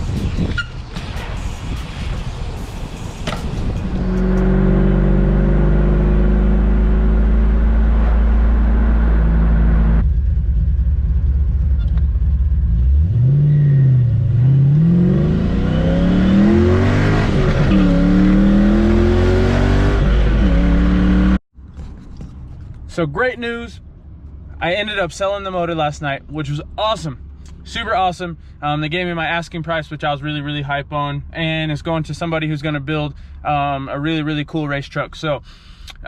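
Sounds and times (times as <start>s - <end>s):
car engine running and revving: 0.0s - 21.4s.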